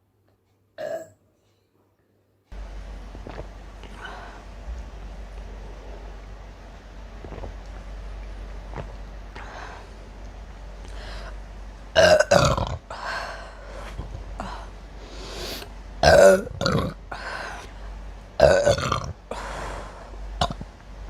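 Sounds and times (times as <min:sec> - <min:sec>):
person burping loudly: 0:12.0 - 0:12.9, 0:16.0 - 0:17.0, 0:18.4 - 0:19.2, 0:20.4 - 0:20.6.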